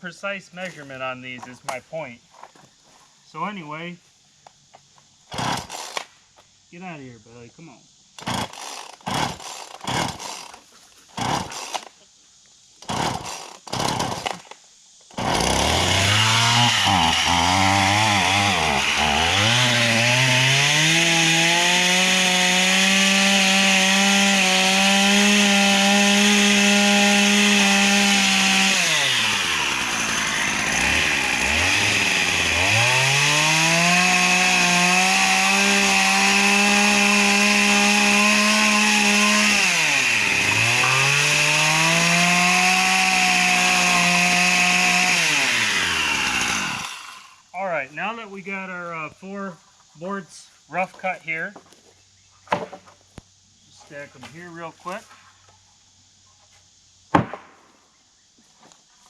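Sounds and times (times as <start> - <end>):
chainsaw revving and cutting: 5.3 - 6.0, 8.2 - 10.6, 11.2 - 11.9, 12.8 - 14.4, 15.1 - 47.4.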